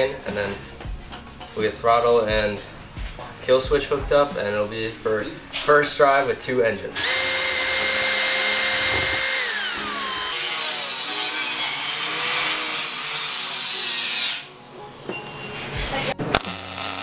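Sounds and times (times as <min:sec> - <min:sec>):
power drill whining: 0:07.0 - 0:14.5
coarse noisy power tool: 0:07.0 - 0:14.6, 0:16.3 - 0:17.0.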